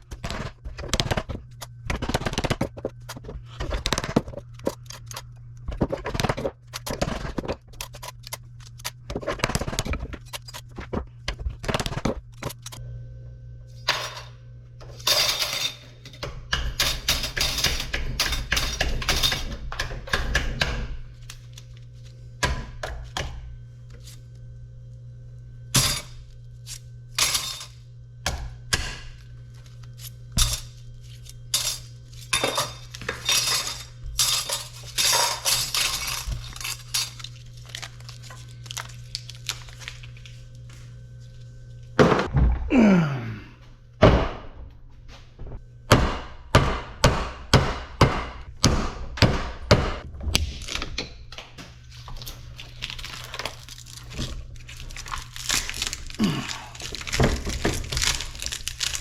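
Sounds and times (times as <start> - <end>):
steady low hum: 0.0 - 59.0
metal scrap clinking and clanking: 15.0 - 16.2, 27.2 - 27.8, 31.5 - 37.9.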